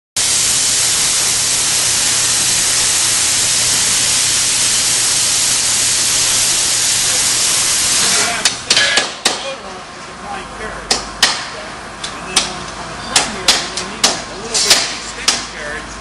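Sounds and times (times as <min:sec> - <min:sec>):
welding arc hissing: 0:00.2 - 0:09.2.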